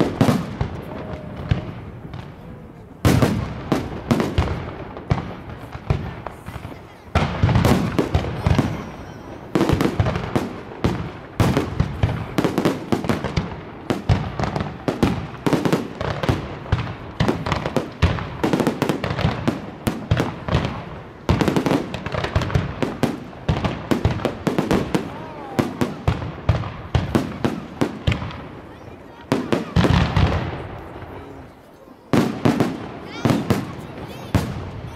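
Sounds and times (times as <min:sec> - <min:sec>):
crowd voices: 0:00.0 - 0:34.9
fireworks bangs and crackles: 0:00.0 - 0:34.9.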